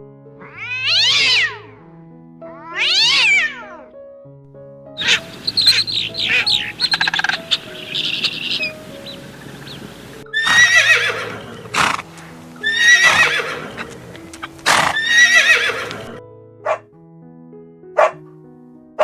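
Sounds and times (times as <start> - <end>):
horse whinnying: 0.4 - 1.8, 2.6 - 3.8, 5.0 - 16.8.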